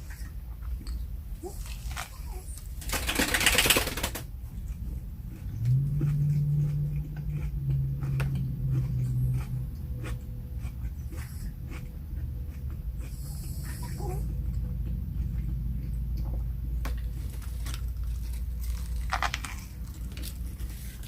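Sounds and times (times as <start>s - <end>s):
steady low hum: 0.0s - 21.0s
chewing clicks and smacks: 4.5s - 12.9s
paper rustling: 17.0s - 21.0s.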